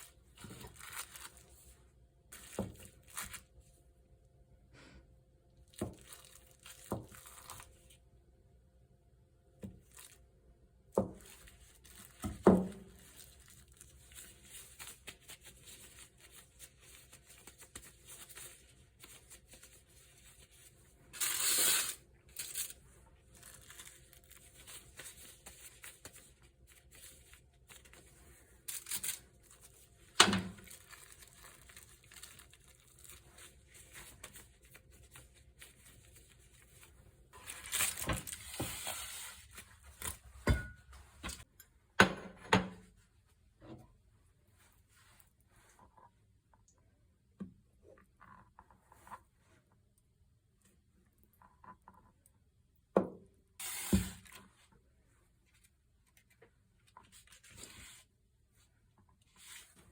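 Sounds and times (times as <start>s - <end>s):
rustling and crinkling: 0.0s - 3.7s, 5.7s - 8.0s, 9.6s - 10.3s, 10.9s - 40.4s.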